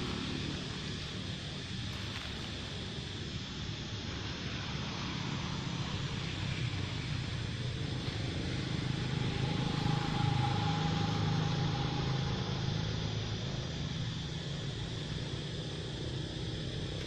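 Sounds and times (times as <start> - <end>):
engine hum: 0.0 - 17.0.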